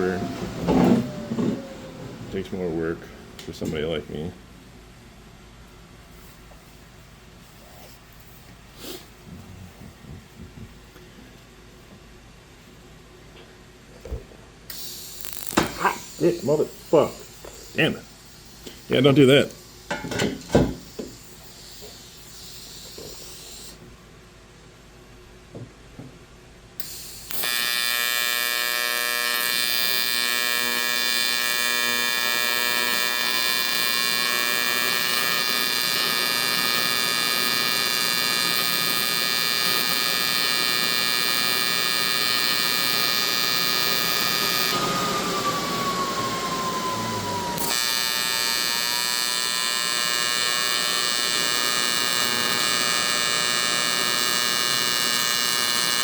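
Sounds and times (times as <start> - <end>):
welding arc buzzing: 14.7 - 23.8, 26.8 - 56.0.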